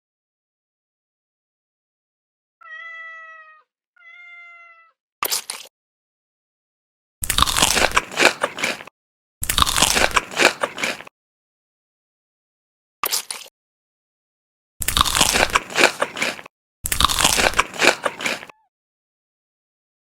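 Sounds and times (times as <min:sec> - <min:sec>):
cat meowing: 0:02.6 - 0:05.0, 0:18.4 - 0:18.7
crunchy food chewing: 0:07.2 - 0:11.1, 0:13.0 - 0:13.5, 0:14.8 - 0:18.6.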